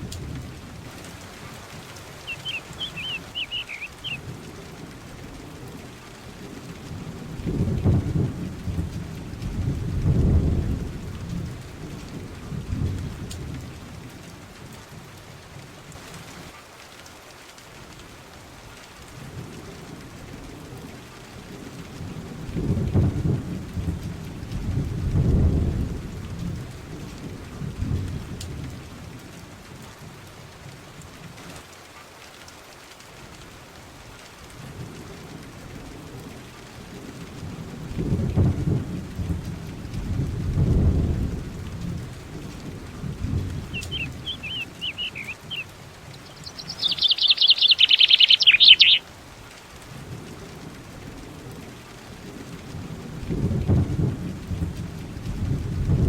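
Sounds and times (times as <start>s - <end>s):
thunder rumbling: 0.0s - 4.4s, 6.3s - 13.8s, 22.4s - 28.9s, 37.0s - 49.0s, 52.4s - 56.0s
steady rain: 0.0s - 56.0s.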